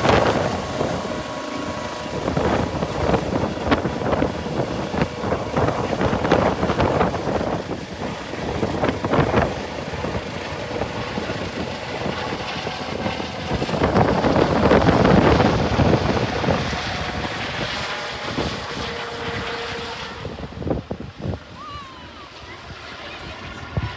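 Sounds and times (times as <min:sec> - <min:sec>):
helicopter engines and rotors: 0:00.0 - 0:23.9.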